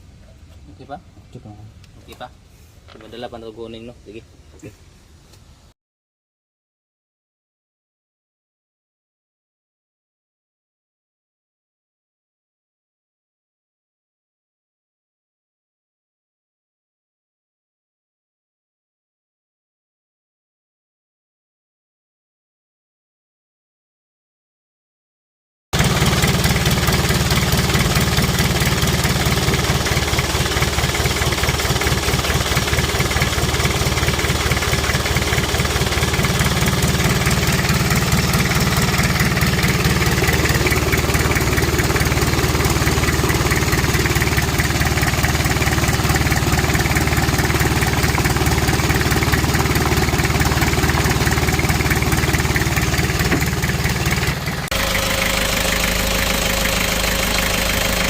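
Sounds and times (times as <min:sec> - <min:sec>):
diesel engine idling: 0:25.8 - 0:58.0.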